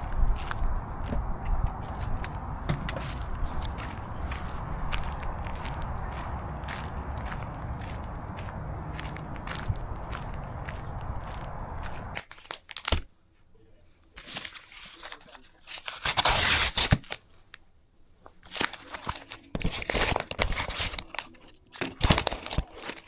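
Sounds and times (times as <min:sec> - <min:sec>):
steady noise: 0:00.0 - 0:12.2
plastic packaging crinkling and tearing: 0:12.2 - 0:13.1, 0:14.2 - 0:17.6, 0:18.4 - 0:23.0.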